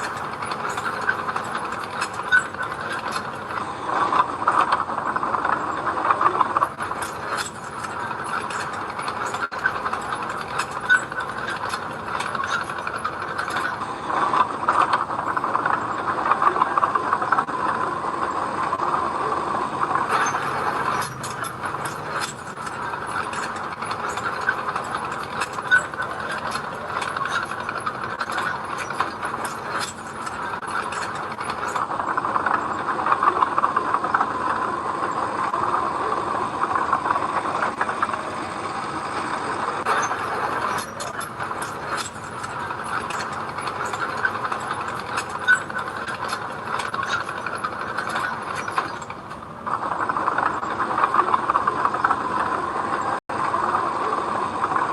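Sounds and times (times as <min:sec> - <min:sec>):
metallic clanks and rattles: 0:00.0 - 0:03.7, 0:06.6 - 0:15.0, 0:20.0 - 0:31.9, 0:39.8 - 0:49.5.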